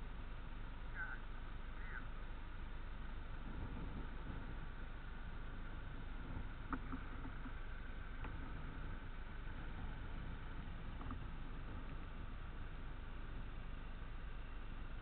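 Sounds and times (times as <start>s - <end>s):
low engine rumble: 0.0s - 15.0s
faint clicks: 6.3s - 8.8s, 10.9s - 12.0s.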